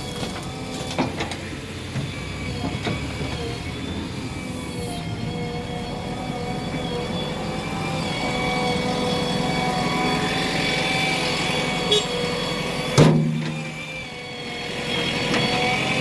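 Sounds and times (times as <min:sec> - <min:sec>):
constant whine: 0:00.0 - 0:16.0
heavy diesel machinery running: 0:00.0 - 0:16.0.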